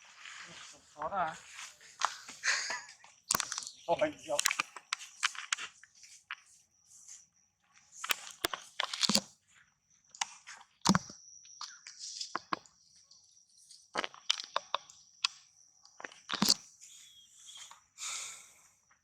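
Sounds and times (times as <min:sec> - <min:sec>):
sharp crunches and cracks: 0:01.4 - 0:06.5, 0:08.0 - 0:09.4, 0:10.2 - 0:12.8, 0:13.9 - 0:16.7.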